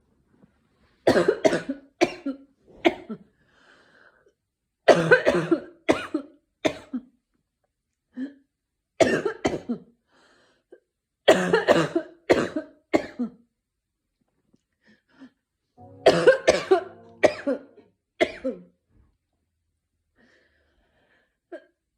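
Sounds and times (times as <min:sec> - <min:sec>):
person coughing: 0:01.1 - 0:02.3, 0:04.9 - 0:06.9, 0:16.0 - 0:18.4
faint breaths: 0:03.4 - 0:04.3.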